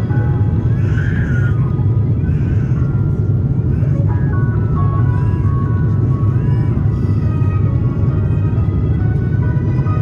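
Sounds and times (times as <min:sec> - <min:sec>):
aircraft cabin rumble: 0:00.0 - 0:10.0.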